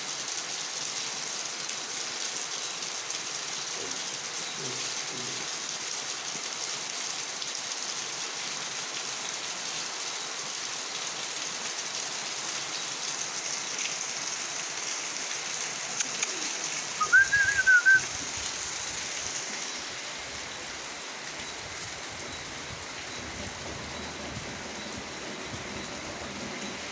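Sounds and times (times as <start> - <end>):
steady rain falling: 0.0 - 26.9
high hiss: 15.8 - 20.8
bird warbling call: 16.0 - 18.1.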